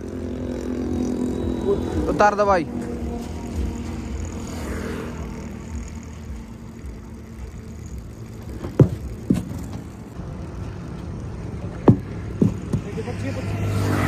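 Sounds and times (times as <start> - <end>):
diesel tractor engine idling: 0.0 - 13.2
sharp knocks: 11.8 - 12.9.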